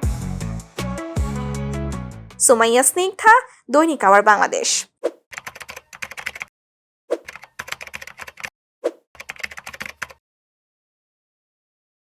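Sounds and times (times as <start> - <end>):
rapid keyboard-like clicking: 5.3 - 6.5, 7.2 - 8.5, 9.2 - 10.2.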